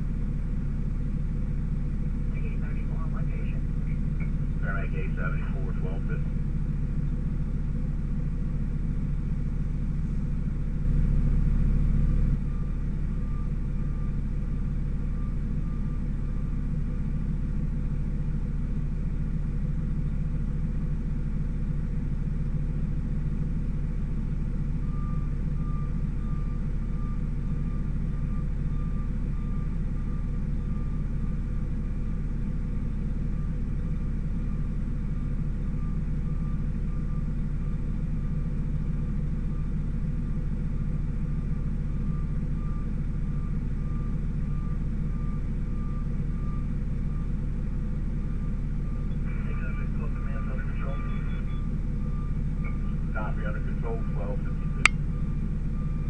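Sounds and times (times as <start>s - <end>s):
fire engine rumbling: 0.0s - 56.0s
faint repeating beep: 48.3s - 56.0s.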